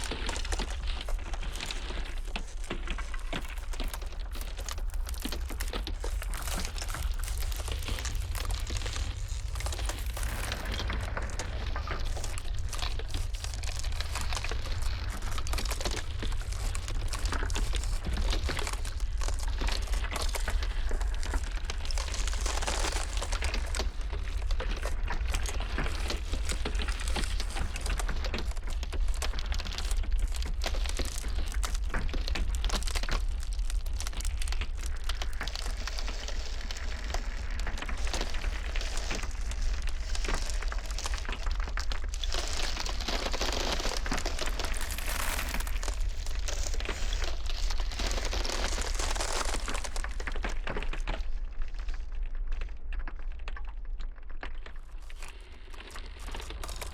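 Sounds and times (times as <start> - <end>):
low rumble: 0.0 - 29.2
ice cracking and crackling: 0.0 - 56.9.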